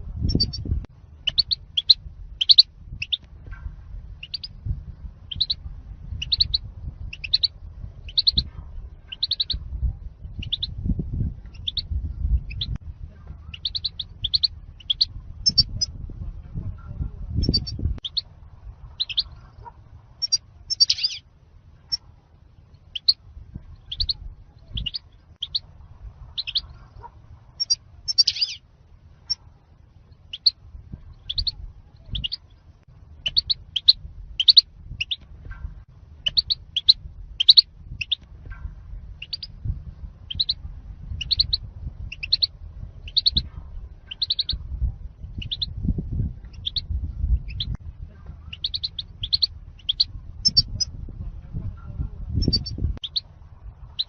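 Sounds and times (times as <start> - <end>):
low rumble: 0.0 - 54.0
goldfinch chirping: 1.2 - 3.2, 4.2 - 4.5, 5.3 - 5.6, 6.2 - 7.5, 8.1 - 8.5, 9.1 - 9.6, 10.4 - 10.7, 11.5 - 11.9, 13.5 - 15.8, 19.0 - 19.4, 20.2 - 21.2, 22.9 - 23.2, 23.8 - 25.6, 26.4 - 26.8, 27.6 - 28.6, 30.3 - 30.6, 31.2 - 32.5, 33.2 - 35.2, 36.2 - 38.2, 39.2 - 39.5, 40.3 - 40.6, 41.2 - 43.5, 44.1 - 44.6, 45.4 - 45.7, 46.5 - 46.8, 47.4 - 47.7, 48.5 - 50.9, 52.4 - 53.2.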